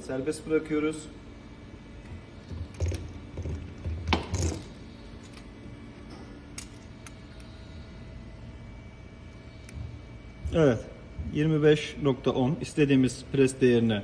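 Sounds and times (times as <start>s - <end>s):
faint steady hum: 0.0s - 14.0s
metallic clinks and knocks: 2.7s - 5.5s, 6.5s - 7.0s.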